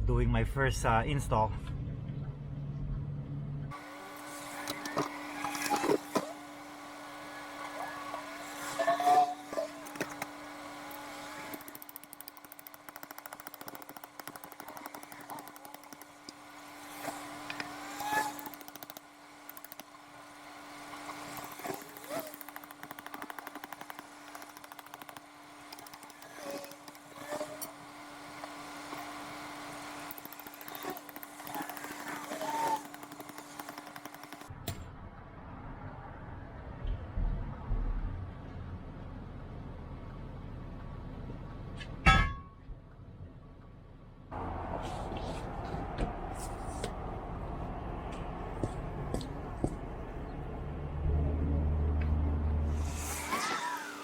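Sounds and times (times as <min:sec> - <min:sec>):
steady motor hum: 0:01.6 - 0:34.7, 0:44.3 - 0:54.0
power tool rattling: 0:09.1 - 0:16.4, 0:17.0 - 0:20.0, 0:21.1 - 0:27.8, 0:29.9 - 0:34.5
metal knocks and clanks: 0:42.0 - 0:42.6.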